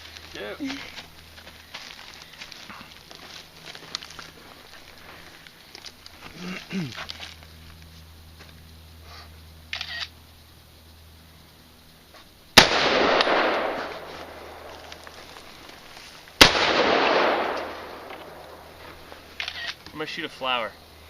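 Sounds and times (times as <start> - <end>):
rifle shots with echo: 12.6 - 14.8, 16.4 - 18.6.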